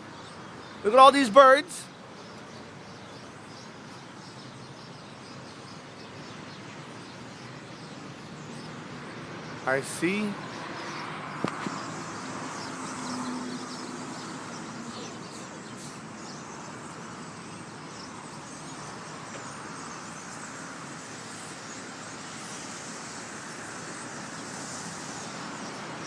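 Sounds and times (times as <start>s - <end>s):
flock of birds chattering: 0.0s - 26.0s
rushing background noise: 0.6s - 1.9s.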